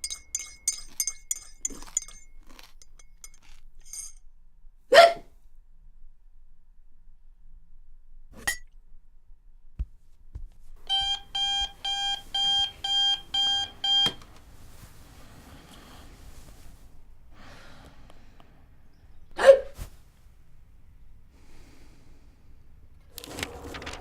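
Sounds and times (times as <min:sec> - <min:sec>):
shrill electronic alarm beeps: 0:11.0 - 0:14.1.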